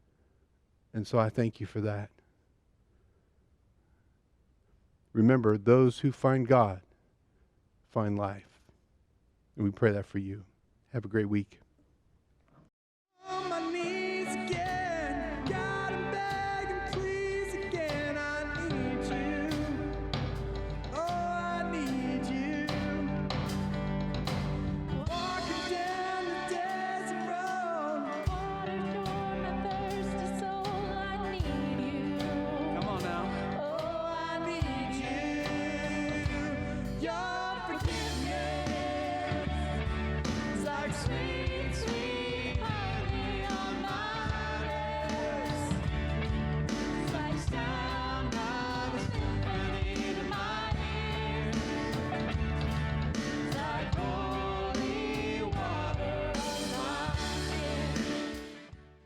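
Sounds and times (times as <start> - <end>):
lead singer over a band: 13.2 - 23.9, 24.9 - 58.6.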